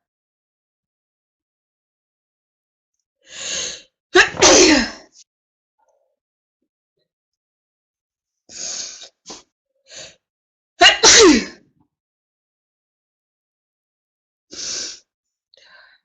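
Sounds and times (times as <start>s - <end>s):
woman sneezing: 4.2s - 5.0s, 10.8s - 11.6s.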